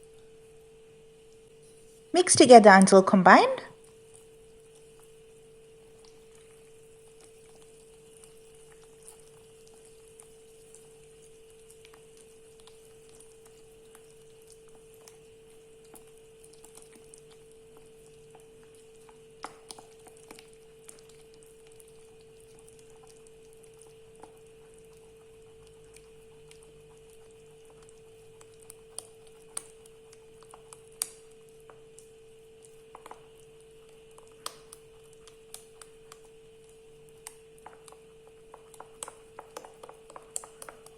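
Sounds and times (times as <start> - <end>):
steady hum: 0.0 - 16.4
utensil stirring batter in a bowl: 3.8 - 40.9.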